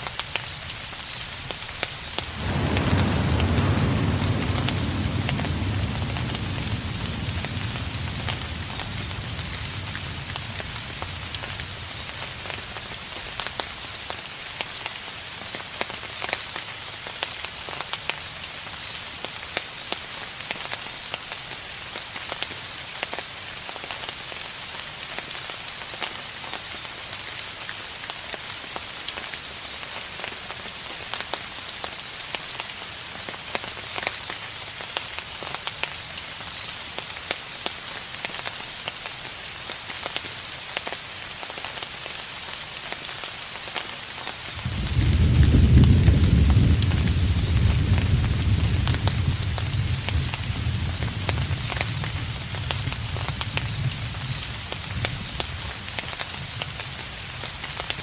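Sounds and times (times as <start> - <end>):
steady rain falling: 0.0 - 58.0
raindrops ticking: 1.4 - 18.2
distant thunder rumble: 2.1 - 12.9, 44.6 - 53.0.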